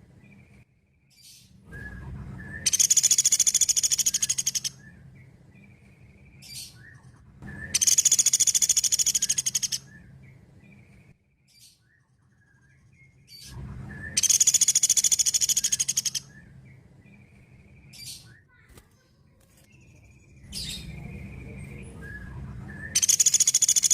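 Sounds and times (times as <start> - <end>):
woodpecker trilling: 2.5 - 4.9, 7.6 - 10.1, 14.2 - 17.2, 22.7 - 23.9.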